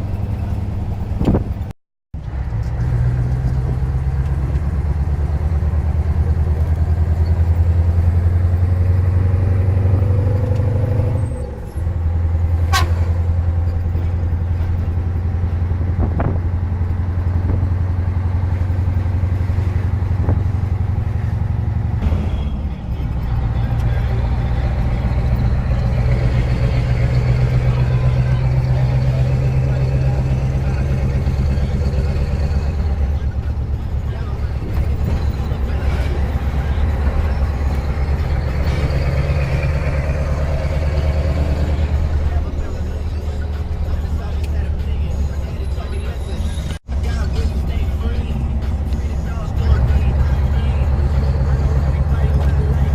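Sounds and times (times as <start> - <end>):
diesel engine deep exhaust note: 0.0 - 52.9.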